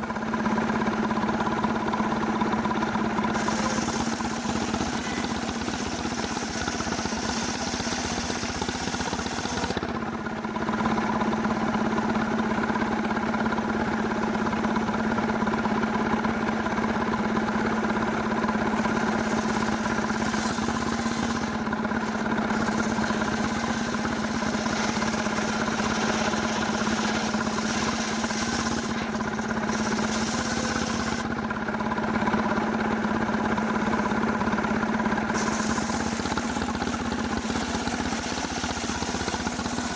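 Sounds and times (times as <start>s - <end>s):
chainsaw sawing a log: 2.3s - 10.2s, 17.0s - 39.9s.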